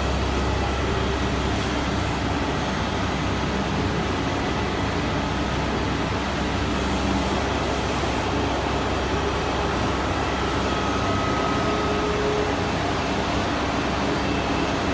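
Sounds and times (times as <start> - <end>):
faint machine whine: 6.6 - 14.9.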